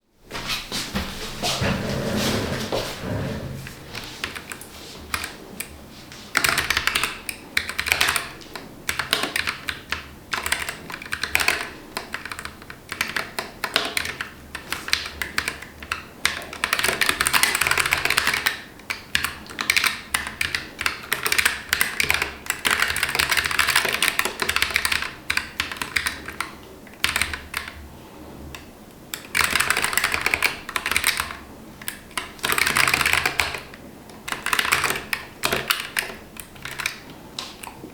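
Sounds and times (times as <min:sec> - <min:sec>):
mechanical keyboard typing: 0:06.3 - 0:27.8, 0:29.2 - 0:37.8.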